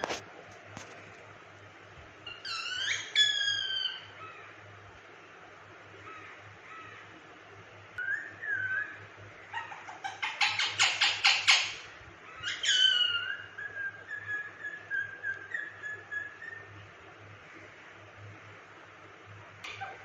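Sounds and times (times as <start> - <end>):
parrot calling: 2.2 - 4.6, 8.0 - 16.7.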